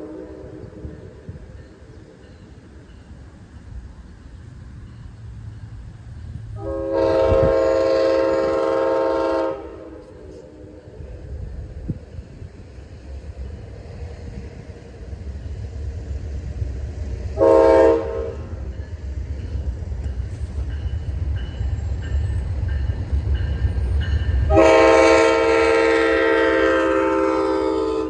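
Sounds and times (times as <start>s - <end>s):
locomotive air horn blasts: 0.0s - 1.0s, 6.6s - 11.0s, 17.4s - 18.6s, 24.5s - 28.0s
train rumble: 0.0s - 28.0s.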